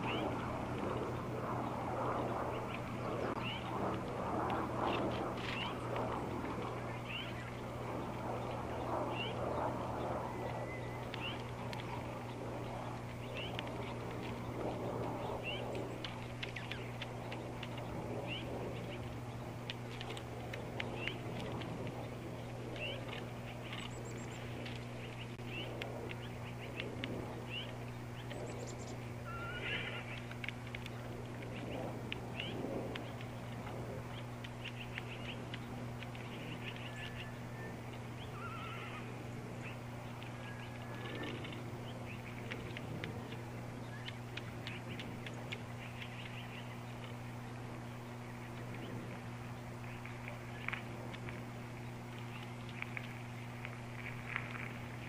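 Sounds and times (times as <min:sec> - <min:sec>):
birds chirping: 0:00.0 - 0:55.0
steady low hum: 0:00.0 - 0:55.0
horse whinnying: 0:29.3 - 0:30.0, 0:38.4 - 0:39.0.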